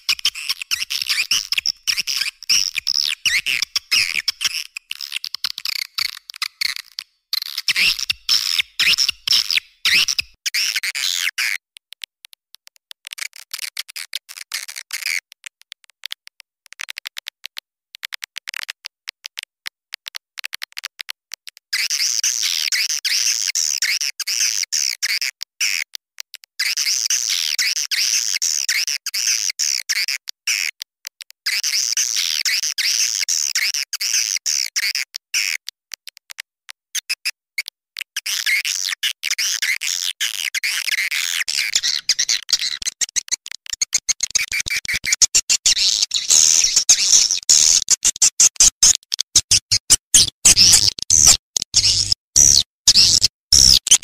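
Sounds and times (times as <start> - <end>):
swiftlet twittering chirps: 43.9 - 47.8.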